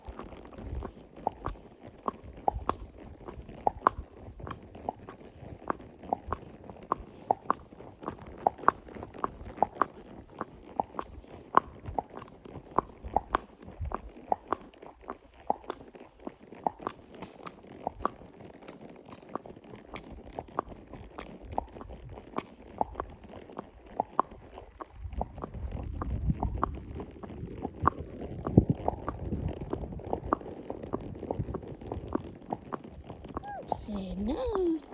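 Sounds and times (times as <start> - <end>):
horse chewing: 0.0 - 34.9.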